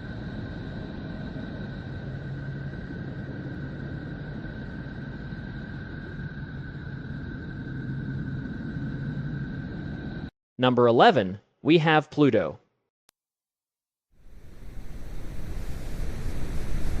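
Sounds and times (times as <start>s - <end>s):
hissing rumble: 0.0s - 10.3s, 14.2s - 17.0s
low hum: 0.0s - 10.3s, 14.2s - 17.0s.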